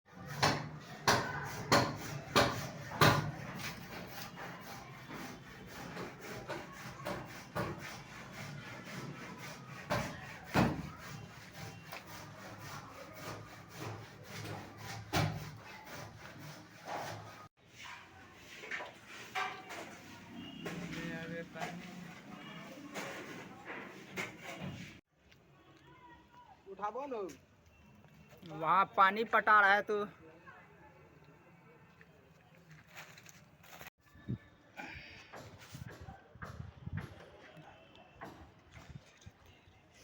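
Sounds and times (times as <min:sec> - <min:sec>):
rubbing and scraping: 0:00.1 - 0:25.0.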